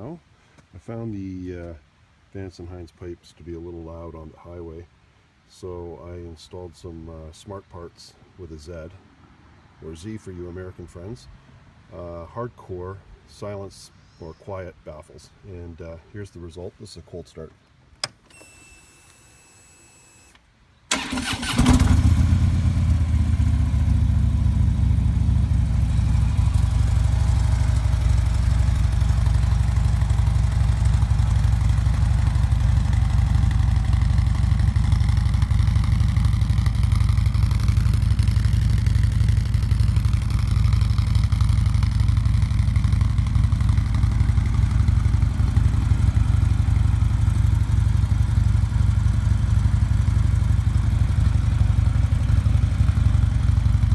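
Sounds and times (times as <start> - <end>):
starter motor cranking: 20.9 - 22.6
motorcycle engine idling: 20.9 - 53.9.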